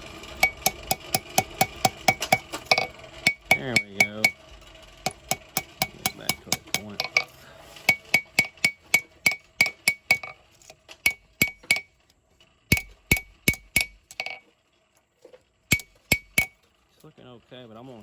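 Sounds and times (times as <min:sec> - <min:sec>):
hammer striking hot steel on anvil: 0:00.3 - 0:04.4, 0:05.0 - 0:10.4, 0:11.0 - 0:11.9, 0:12.7 - 0:14.4, 0:15.7 - 0:16.6.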